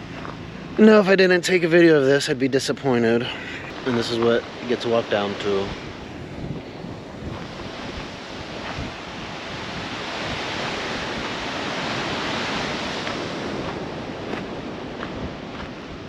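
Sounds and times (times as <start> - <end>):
ocean waves breaking: 3.0 - 16.0.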